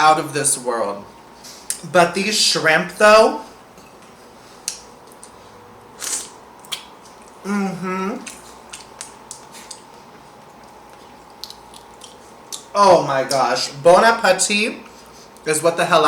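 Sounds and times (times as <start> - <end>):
slurping: 6.0 - 7.5
person humming mmm: 7.4 - 8.4.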